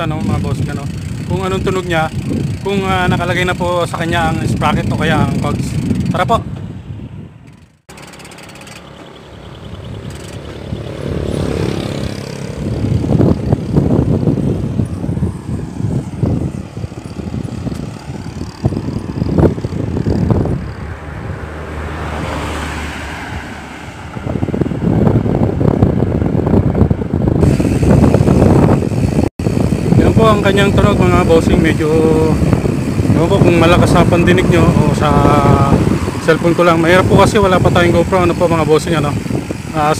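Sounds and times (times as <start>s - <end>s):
bicycle hub ticking: 0.0s - 6.4s, 7.4s - 11.1s, 11.8s - 20.8s, 27.3s - 39.9s
loud rumbling noise: 9.6s - 21.9s, 22.9s - 39.9s.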